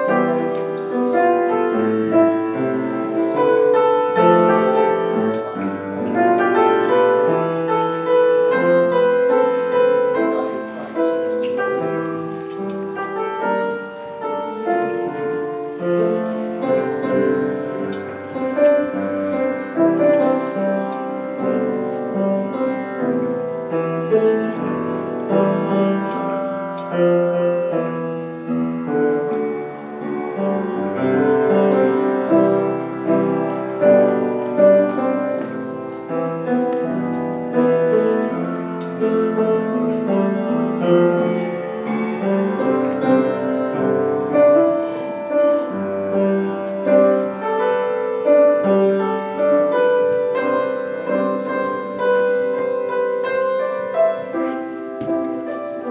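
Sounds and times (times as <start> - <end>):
solo piano piece: 0.0 - 55.9.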